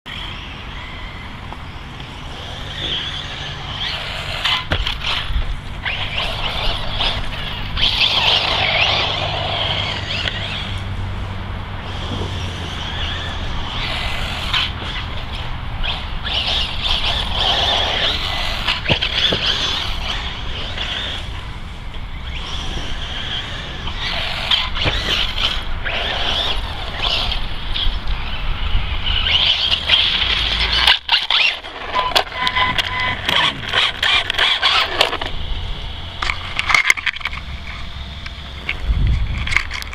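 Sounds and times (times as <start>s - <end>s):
rc car motor whining: 0.1s - 39.9s
sharp knocks from landings: 3.8s - 9.3s, 16.6s - 20.4s.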